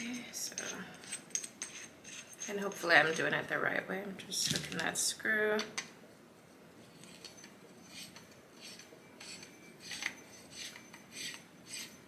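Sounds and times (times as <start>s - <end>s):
metal scraping and clinking: 0.0s - 3.4s, 6.8s - 12.0s.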